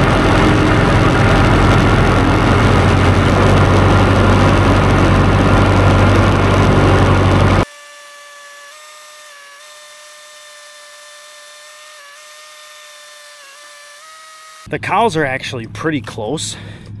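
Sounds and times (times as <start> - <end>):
steady whine: 0.0 - 7.7
tractor diesel engine running: 0.0 - 7.7.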